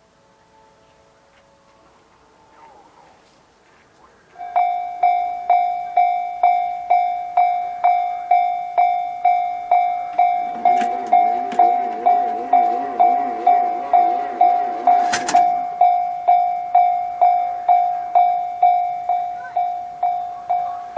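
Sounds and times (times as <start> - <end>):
level crossing alarm ringing: 4.4 - 20.9
low wavering sound: 4.4 - 20.9.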